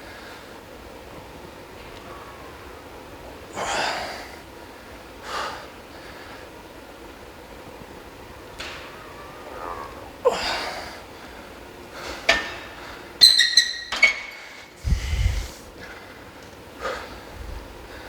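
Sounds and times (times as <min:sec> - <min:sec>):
person straining exhale: 0:08.7 - 0:11.1, 0:14.8 - 0:15.8.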